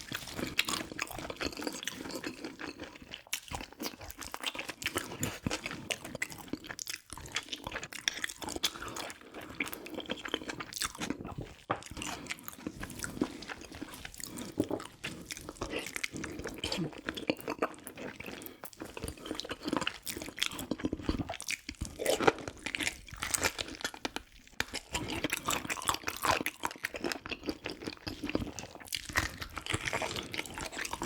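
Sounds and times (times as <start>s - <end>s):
chewing with crunching: 0.0s - 31.0s.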